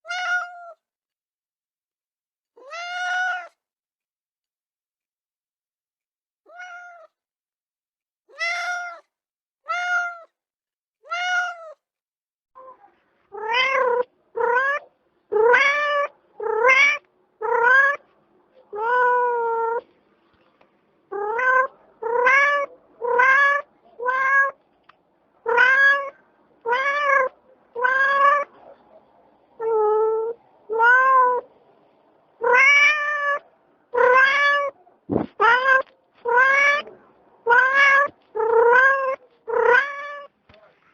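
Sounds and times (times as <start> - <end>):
cat meowing: 0.0 - 0.8, 2.6 - 3.6, 6.5 - 7.2, 8.3 - 9.1, 9.7 - 10.3, 11.0 - 11.8, 12.6 - 18.0, 18.7 - 19.8, 21.1 - 24.6, 25.4 - 28.5, 29.6 - 31.5, 32.4 - 40.4.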